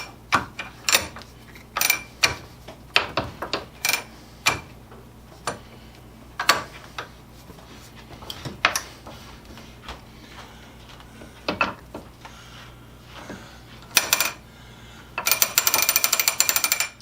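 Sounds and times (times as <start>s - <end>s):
hand drill clicking on metal: 13.9s - 14.4s, 15.2s - 17.0s.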